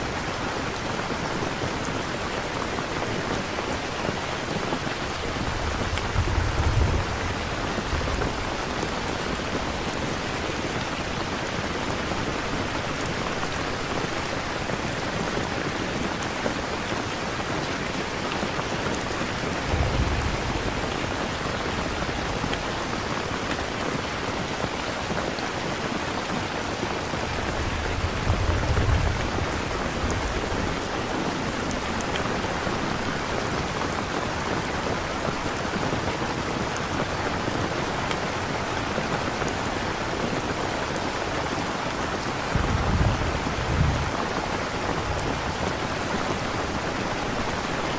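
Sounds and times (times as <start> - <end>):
steady rain: 0.0 - 47.9
thunder rolling: 5.4 - 8.5, 19.6 - 23.1, 27.4 - 30.8, 42.5 - 44.3.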